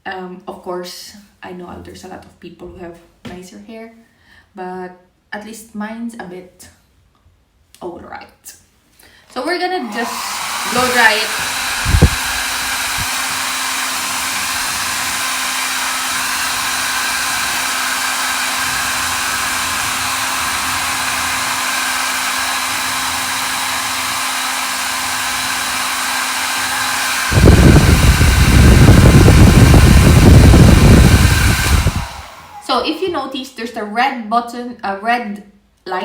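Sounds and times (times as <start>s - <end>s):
hair dryer whirring: 9.6s - 33.1s.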